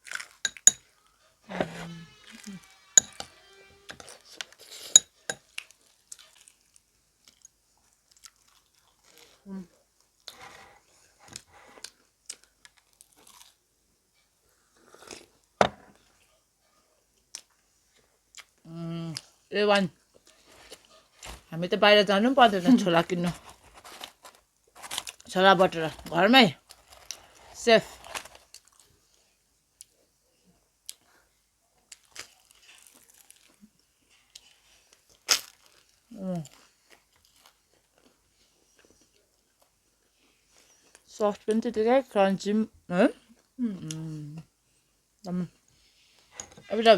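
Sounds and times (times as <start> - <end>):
person chewing crispy bread: 0.0 - 0.8, 4.0 - 10.4, 11.7 - 13.7, 23.5 - 25.2, 26.6 - 30.0, 31.8 - 41.1.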